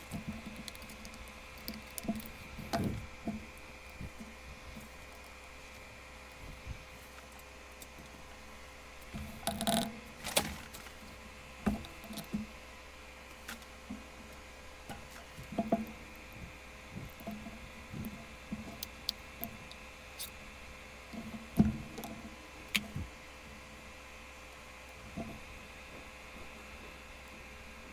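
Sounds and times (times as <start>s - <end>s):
light taps clicks and rustles: 0.0s - 5.5s.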